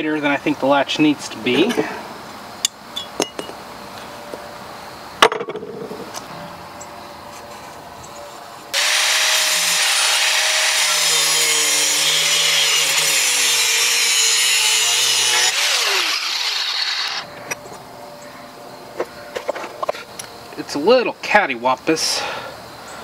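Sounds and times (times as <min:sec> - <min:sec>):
angle grinder grinding steel: 0:08.8 - 0:17.3.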